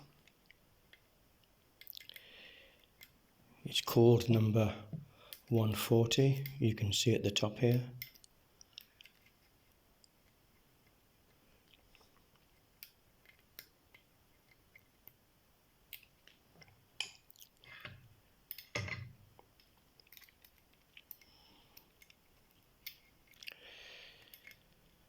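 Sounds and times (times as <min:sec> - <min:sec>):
small metal clicks of lock picking: 0:07.6 - 0:09.4, 0:17.8 - 0:22.2, 0:24.2 - 0:24.8.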